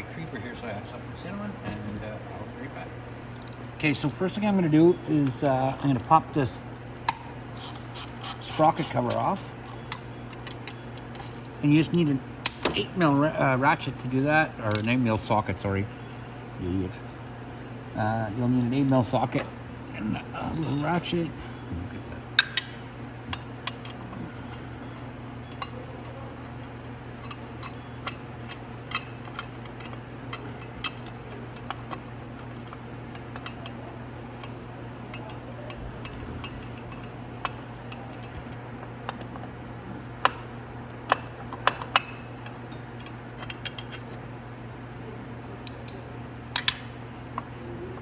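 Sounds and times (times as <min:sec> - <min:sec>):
steady low hum: 0:00.0 - 0:48.0
ratchet clicking and clinking: 0:11.2 - 0:11.5.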